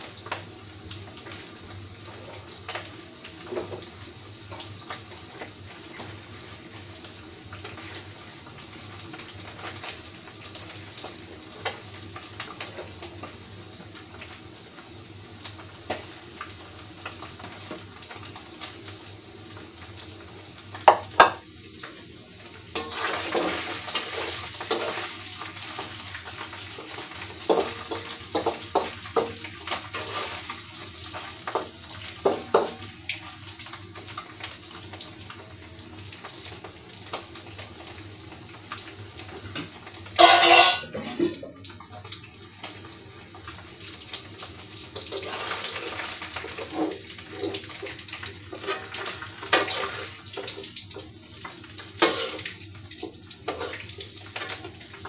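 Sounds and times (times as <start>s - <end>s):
pots and utensils clinking: 20.8s - 21.5s, 22.7s - 25.2s, 27.4s - 30.5s, 31.5s - 32.9s, 39.5s - 41.8s, 48.5s - 50.6s, 51.9s - 52.5s.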